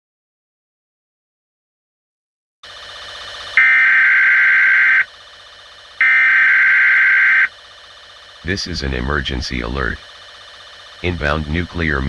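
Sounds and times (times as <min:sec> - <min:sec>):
long electronic beeps: 0:03.6 - 0:05.1, 0:06.0 - 0:07.6.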